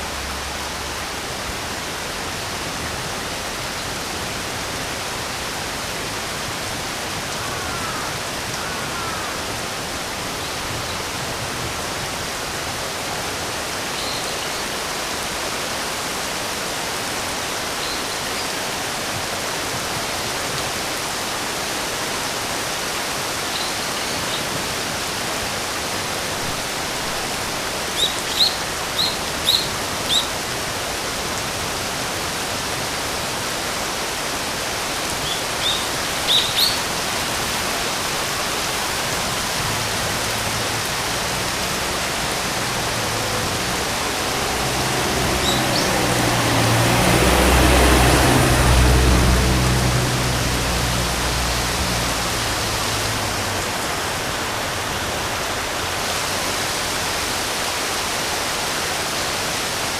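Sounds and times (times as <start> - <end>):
rain hissing: 0.0 - 59.9
bird chirping: 28.0 - 30.3, 35.2 - 36.9, 45.4 - 46.0.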